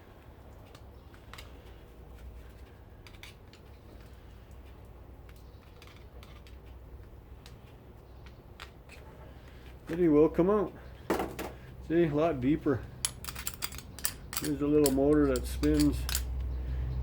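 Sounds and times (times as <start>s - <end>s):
small parts clicking: 13.0s - 16.4s.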